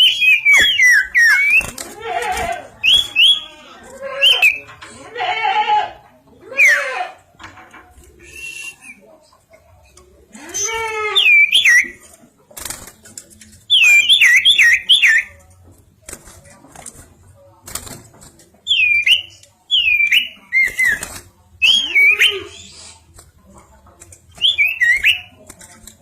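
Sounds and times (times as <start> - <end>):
bird whistling song: 0.0 - 1.7, 11.2 - 12.0, 13.7 - 15.3, 18.7 - 21.0, 21.6 - 22.9, 24.4 - 25.3.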